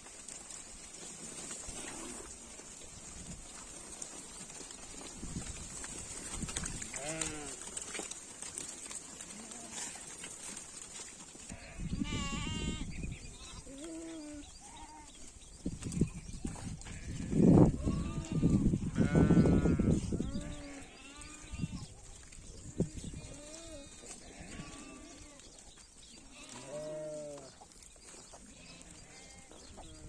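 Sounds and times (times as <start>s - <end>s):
sheep bleating: 7.0s - 7.6s, 11.5s - 15.1s, 16.9s - 21.9s, 26.3s - 27.5s.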